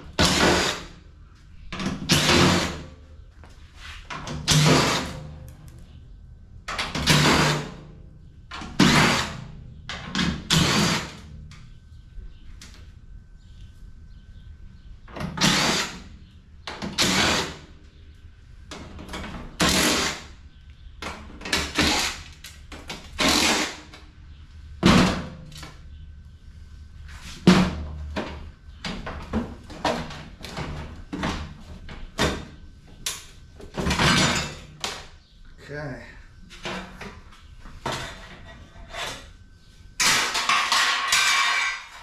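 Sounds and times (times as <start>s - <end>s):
power drill bursts: 15.4s - 16.0s.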